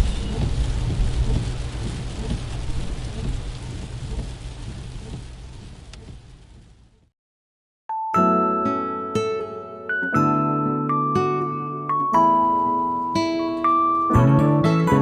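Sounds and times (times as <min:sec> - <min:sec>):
deep low rumble: 0:00.0 - 0:07.0
steady rain: 0:00.0 - 0:07.1, 0:12.3 - 0:14.2.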